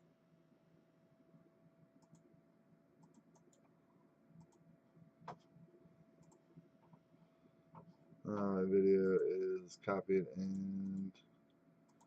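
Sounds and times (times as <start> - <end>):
faint steady hum: 0.0 - 12.0
faint clicks: 2.0 - 2.3, 3.0 - 4.6, 6.2 - 7.0, 10.4 - 12.0.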